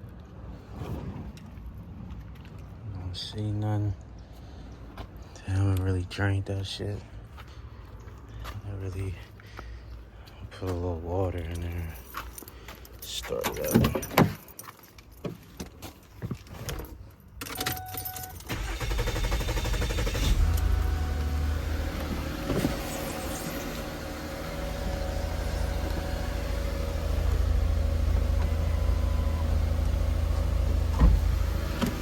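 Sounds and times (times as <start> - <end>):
keys jangling: 11.5 - 15.8
car engine starting and idling: 17.4 - 32.0.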